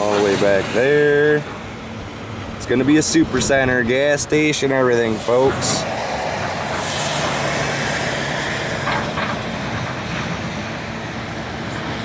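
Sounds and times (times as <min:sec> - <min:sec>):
engine hum: 0:00.0 - 0:12.0
broad even hiss: 0:05.1 - 0:08.9.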